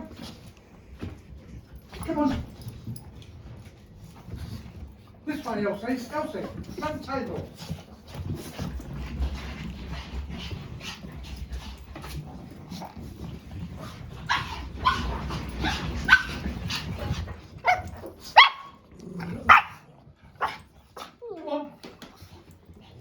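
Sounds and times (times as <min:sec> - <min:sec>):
dog barking in high yaps: 0:18.4 - 0:18.7.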